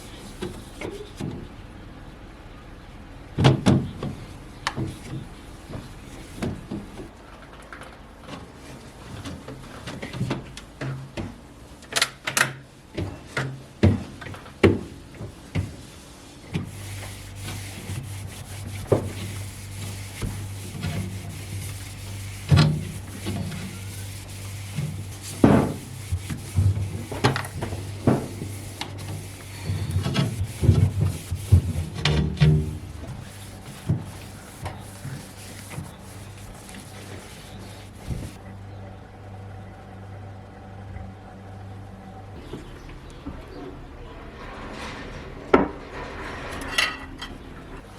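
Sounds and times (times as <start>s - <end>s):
steady low hum: 15.8s - 46.4s.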